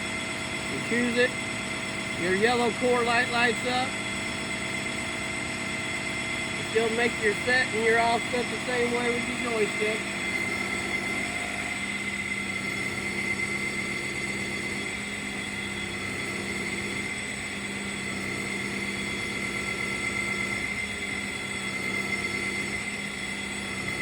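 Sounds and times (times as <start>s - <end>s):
high machine whine: 0.0s - 24.0s
sawmill machinery hum: 0.0s - 24.0s.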